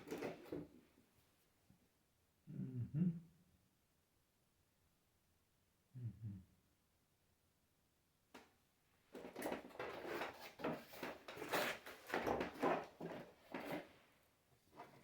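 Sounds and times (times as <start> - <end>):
objects knocking and clattering: 0.0 - 0.7, 9.1 - 14.0.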